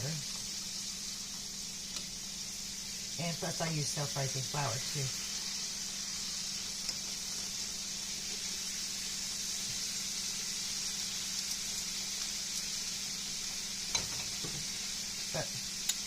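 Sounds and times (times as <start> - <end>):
chicken deep-frying in hot oil: 0.0 - 16.0.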